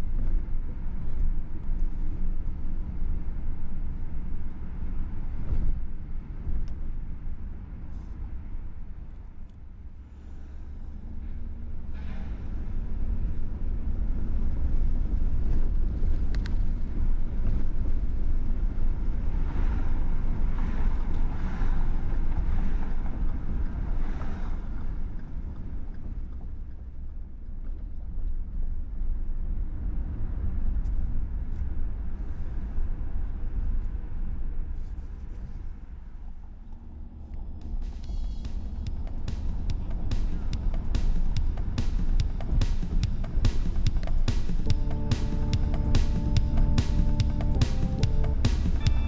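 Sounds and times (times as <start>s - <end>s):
road vehicle rumble: 0.0s - 25.8s, 36.2s - 49.0s.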